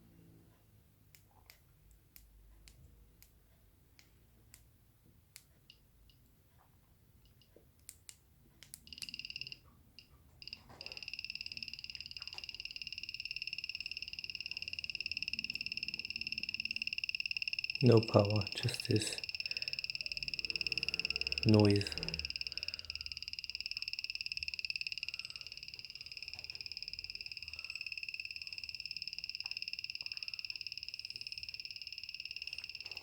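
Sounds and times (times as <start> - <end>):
faint ticks: 5.3 - 33.0
scooter high-pitched clicking beep: 8.9 - 9.6, 10.4 - 33.0.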